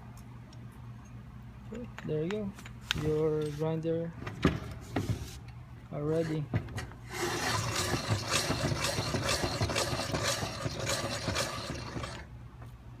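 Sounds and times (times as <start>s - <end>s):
hand-cranked grinder rattling clicks: 7.1s - 12.3s.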